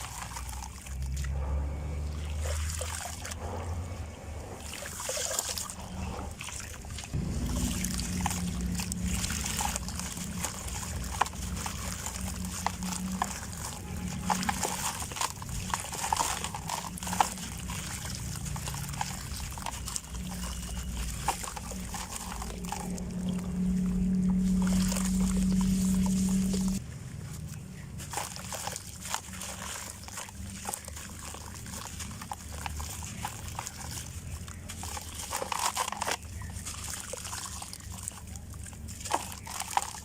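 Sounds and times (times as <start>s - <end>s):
grains trickling: 0.0s - 40.0s
steady low hum: 3.3s - 34.6s.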